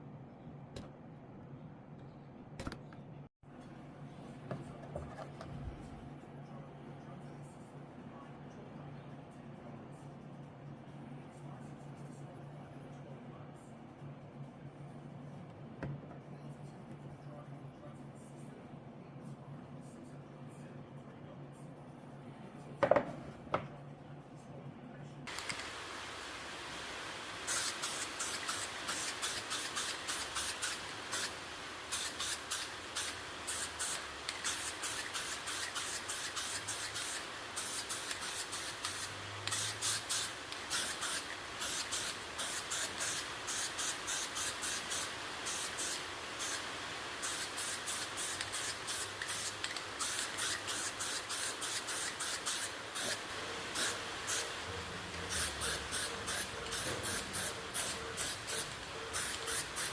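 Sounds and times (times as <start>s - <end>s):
sandpaper strokes on plastic: 32.0s - 40.1s.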